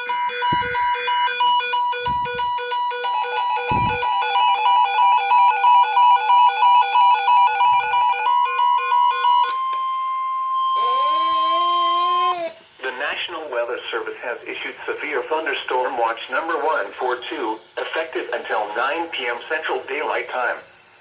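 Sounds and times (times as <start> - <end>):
steady high alarm tone: 0.0 - 12.5.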